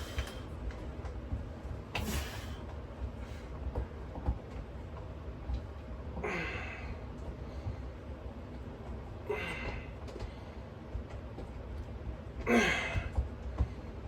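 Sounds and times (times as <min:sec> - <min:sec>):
man exhaling forcefully: 0:02.0 - 0:02.6.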